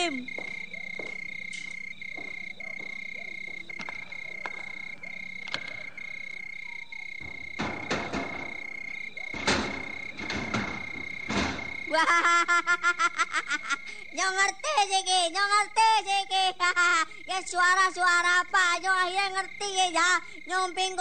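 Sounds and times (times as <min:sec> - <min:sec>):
insects and frogs trilling: 0:00.0 - 0:21.0
knocks: 0:07.2 - 0:11.9.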